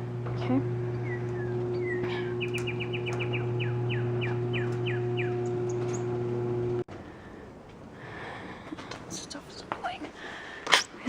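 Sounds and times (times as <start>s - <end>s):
garage door opener motor humming: 0.0s - 6.9s
bird chirping: 0.8s - 6.2s.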